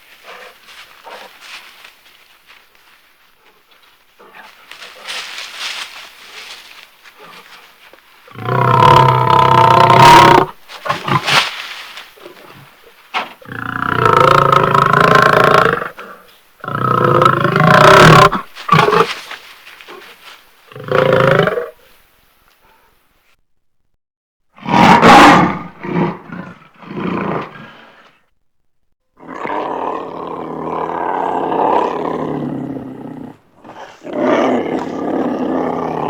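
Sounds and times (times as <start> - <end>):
quiet snarls: 0.2 - 1.7, 3.4 - 22.0, 24.6 - 28.3, 29.2 - 36.0
deep growling roars: 8.4 - 11.3, 29.2 - 36.0.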